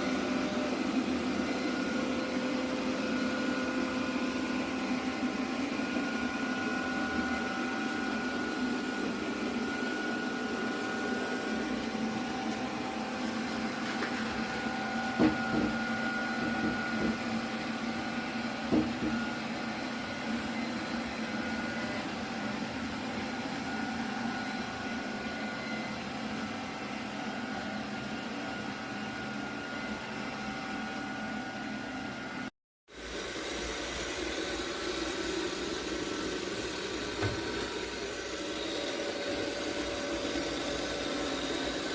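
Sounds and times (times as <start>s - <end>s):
robot vacuum motor hum and whine: 0.0s - 41.9s.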